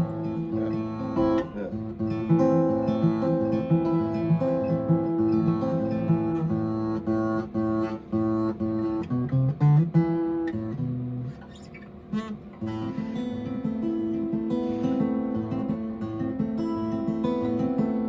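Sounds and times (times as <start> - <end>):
acoustic guitar strummed chords: 0.0 - 18.0.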